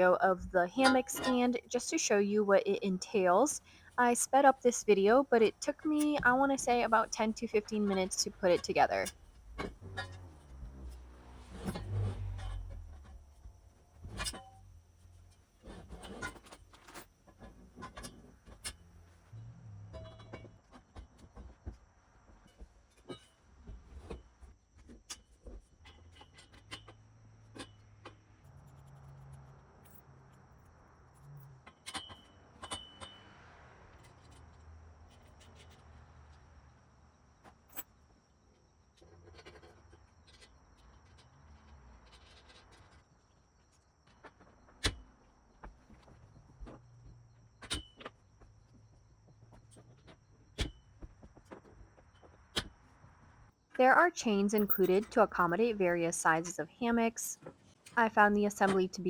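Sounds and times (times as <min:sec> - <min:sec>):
low background hum: 0:00.0 - 0:10.8, 0:53.8 - 0:59.0.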